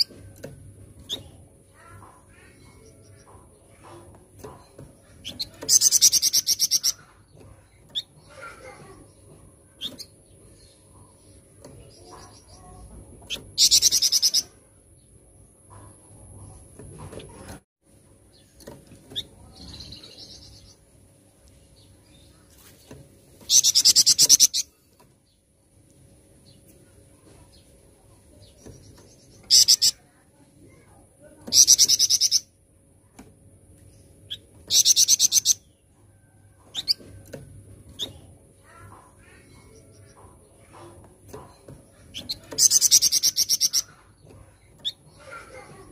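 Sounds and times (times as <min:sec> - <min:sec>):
songbird trilling: 0:05.0 - 0:07.2, 0:11.8 - 0:14.6, 0:28.8 - 0:30.0, 0:31.5 - 0:32.5, 0:34.3 - 0:35.7, 0:42.0 - 0:45.6.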